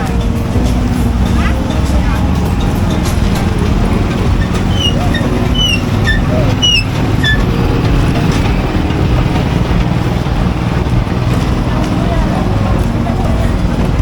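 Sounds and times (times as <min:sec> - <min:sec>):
busy place background rumble: 0:00.0 - 0:14.0
high falling chirps: 0:01.0 - 0:10.3.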